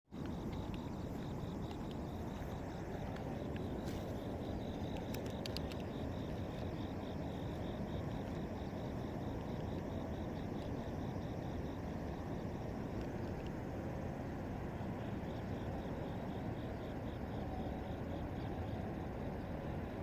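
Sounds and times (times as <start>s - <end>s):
insect chirping: 0.1s - 20.0s
steady low rumble: 0.1s - 20.0s
sharp clicks: 4.6s - 6.8s.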